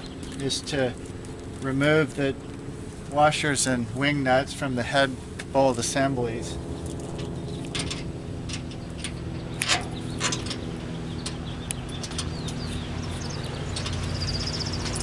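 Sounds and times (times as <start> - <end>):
steady low hum: 0.0 - 15.0
light metallic clicks: 6.8 - 15.0
bird chirps: 8.7 - 15.0.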